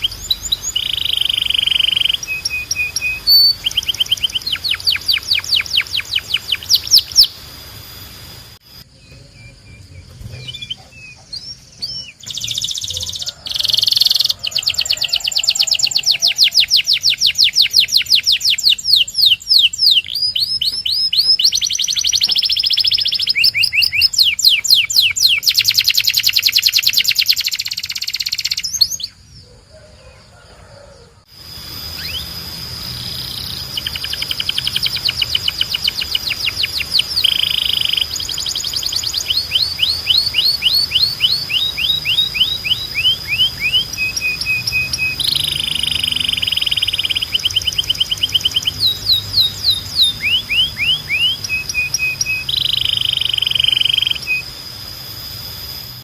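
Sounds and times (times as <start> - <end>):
canary singing trills: 0.0 - 56.0.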